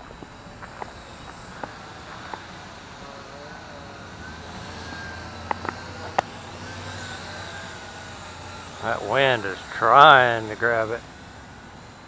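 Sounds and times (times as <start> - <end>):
drone propellers whining: 0.0 - 12.0.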